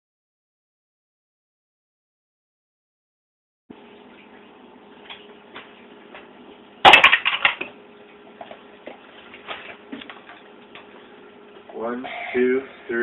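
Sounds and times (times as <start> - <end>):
faint steady hum: 3.7 - 13.0.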